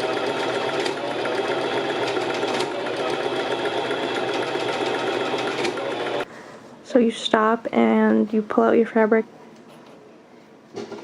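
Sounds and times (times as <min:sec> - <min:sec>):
sewing machine clicking: 0:00.0 - 0:06.2
sewing machine running: 0:00.0 - 0:06.3.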